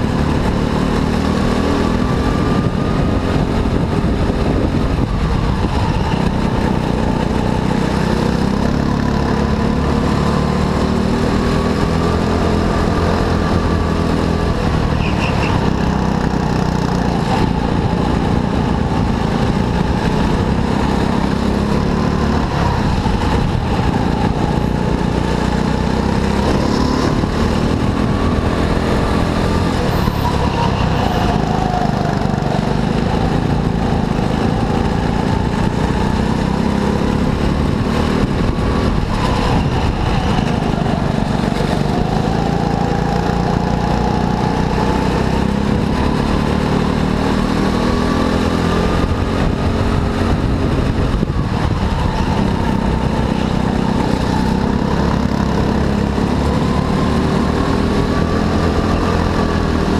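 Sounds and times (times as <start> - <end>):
go-kart engine racing: 0.0 - 59.9.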